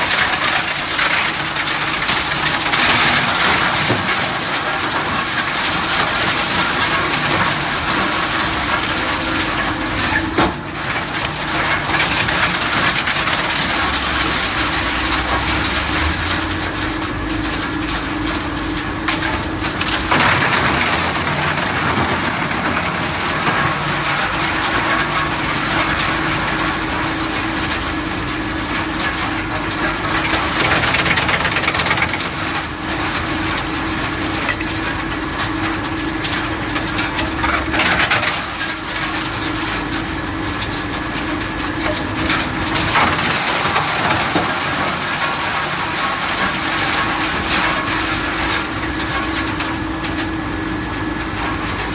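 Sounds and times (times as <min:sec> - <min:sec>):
wood chipper humming: 0:00.0 - 0:51.9
wood chipping crackle: 0:29.8 - 0:34.7.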